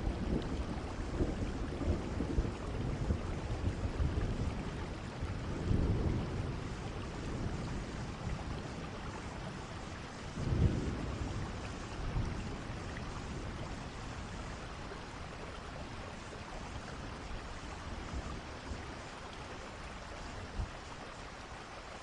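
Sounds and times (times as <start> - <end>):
low thunder rumbles: 0.0 - 20.7
steady rain falling: 0.0 - 22.0.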